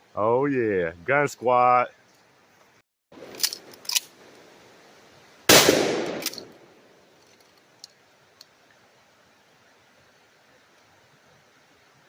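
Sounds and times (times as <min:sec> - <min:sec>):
gunshot: 0:05.5 - 0:06.7
short gun clicks: 0:05.6 - 0:06.6.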